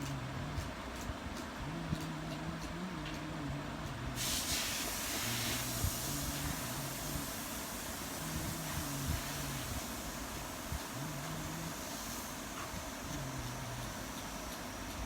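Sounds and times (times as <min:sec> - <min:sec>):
steady hiss: 0:01.7 - 0:15.0.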